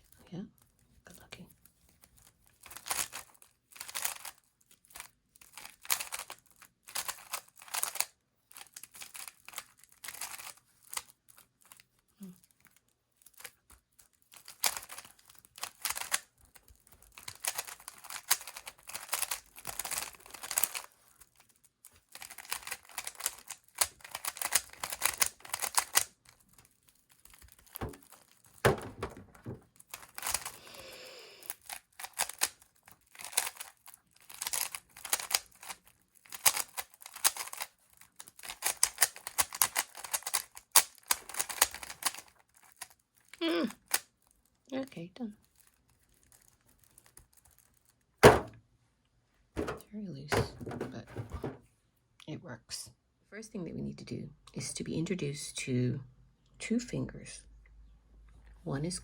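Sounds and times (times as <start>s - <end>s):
puzzle cube clicking as twisted: 2.6s - 11.8s, 14.4s - 21.4s, 22.0s - 26.1s, 27.3s - 42.8s, 43.4s - 44.0s.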